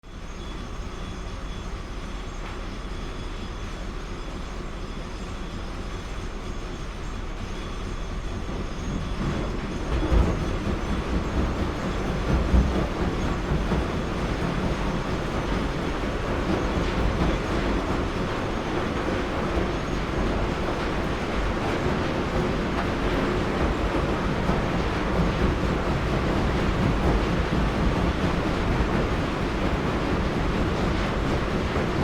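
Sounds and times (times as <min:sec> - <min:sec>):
heavy machinery running: 0:07.3 - 0:32.0.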